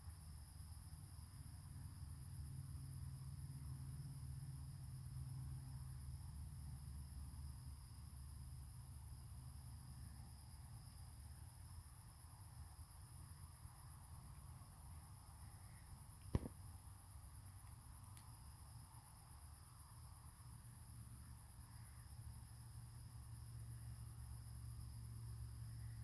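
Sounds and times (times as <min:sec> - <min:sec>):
insects chirping: 0:00.0 - 0:26.0
fire crackling pop: 0:16.2 - 0:16.8.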